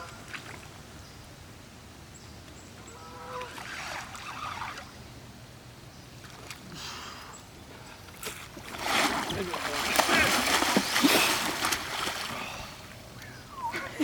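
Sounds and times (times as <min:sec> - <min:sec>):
goose honking: 0:02.9 - 0:03.6
water splashing: 0:03.2 - 0:04.9, 0:08.1 - 0:13.2.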